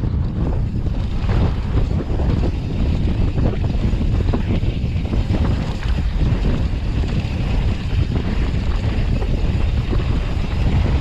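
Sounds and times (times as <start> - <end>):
bike tyres rumbling and rattling: 0.0 - 11.0
wind buffeting microphone: 0.0 - 11.0.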